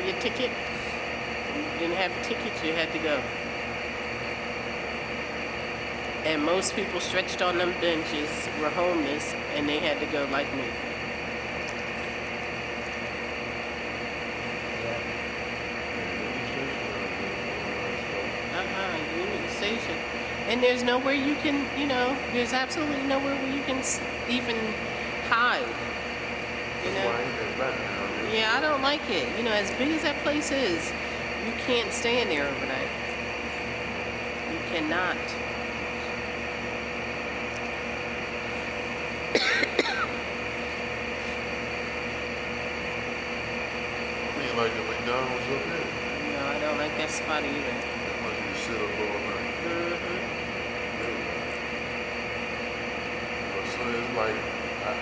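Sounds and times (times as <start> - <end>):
subway train rumbling: 0.0 - 5.2, 5.9 - 36.2
machinery hum: 0.0 - 55.0
person coughing: 39.4 - 40.2.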